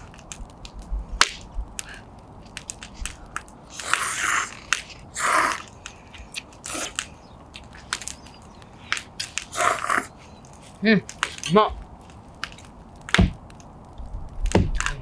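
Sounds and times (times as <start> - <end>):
person chewing: 3.0 - 10.7.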